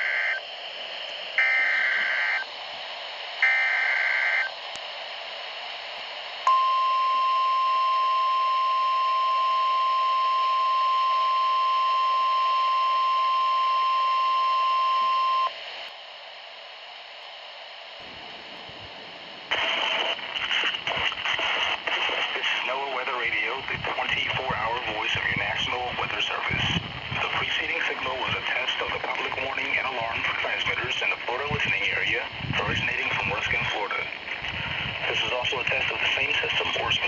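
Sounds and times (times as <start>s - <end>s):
steady warning alarm tone: 0.0s - 0.4s, 1.4s - 2.5s, 3.4s - 4.5s, 6.4s - 15.5s
radio static hiss: 0.0s - 6.5s, 13.9s - 37.0s.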